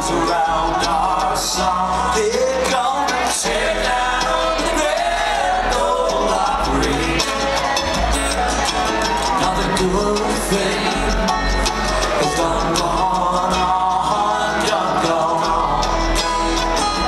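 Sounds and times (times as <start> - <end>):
bluegrass string band playing: 0.0 - 17.0.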